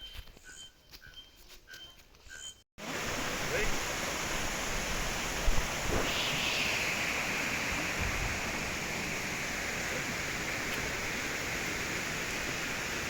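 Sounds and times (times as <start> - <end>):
higher hiss: 2.8 - 13.0.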